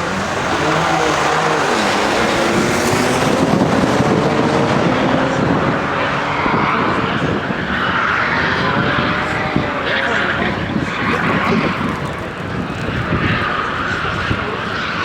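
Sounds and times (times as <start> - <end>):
car engines accelerating hard: 0.0 - 15.0.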